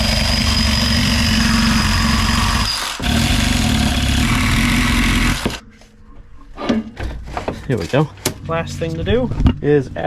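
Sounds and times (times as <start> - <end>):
power tool cutting steel: 0.0 - 5.6.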